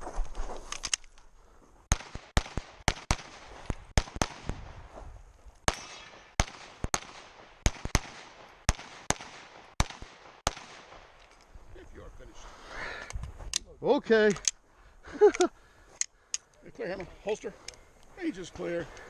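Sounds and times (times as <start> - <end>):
pistol shots: 1.9 - 4.7, 5.7 - 11.1.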